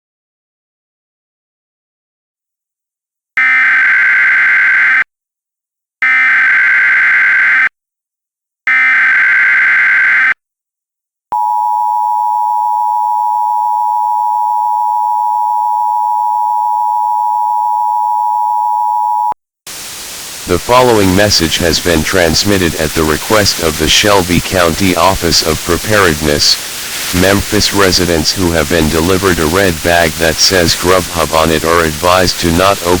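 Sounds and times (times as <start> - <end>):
two-tone attention signal: 11.3 - 19.4.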